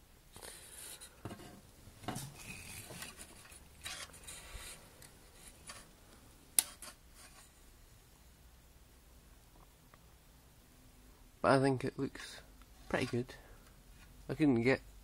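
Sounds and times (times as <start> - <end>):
handling rubbing and soft knocks: 0.8 - 6.0, 12.7 - 14.3.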